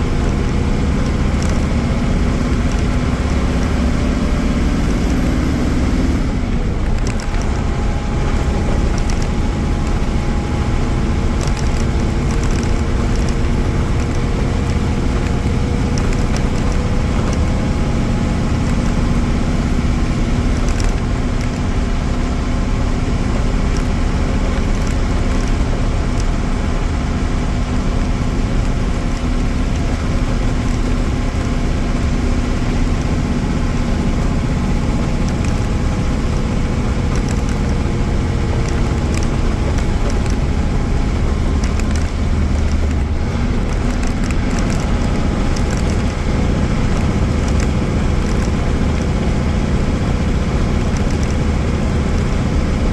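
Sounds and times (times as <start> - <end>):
diesel bus engine running: 0.0 - 52.9
light ticks and rattles: 0.0 - 52.9.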